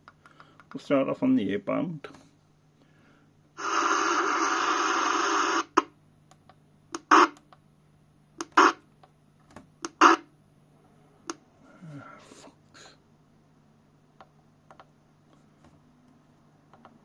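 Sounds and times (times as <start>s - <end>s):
radio static hiss: 3.6s - 5.9s, 7.0s - 7.4s, 8.4s - 8.8s, 9.9s - 10.2s
faint low hum: 4.2s - 17.0s.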